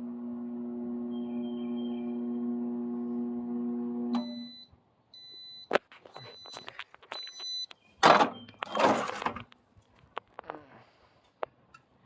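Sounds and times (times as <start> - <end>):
microwave oven humming: 0.0 - 4.6
high microwave beeps: 0.8 - 2.9, 4.1 - 9.0.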